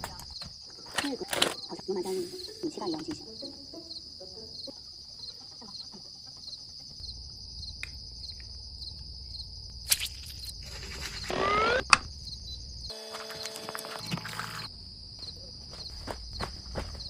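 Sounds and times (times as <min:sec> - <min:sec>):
crickets chirring: 0:00.0 - 0:17.0
rising squeak: 0:10.8 - 0:12.0.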